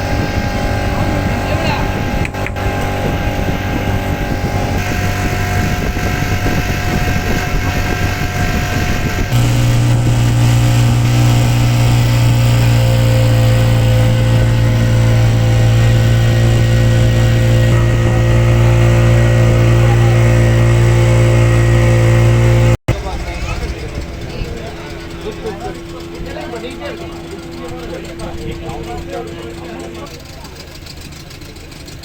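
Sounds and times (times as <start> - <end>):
motorboat engine running: 0.0 - 32.0.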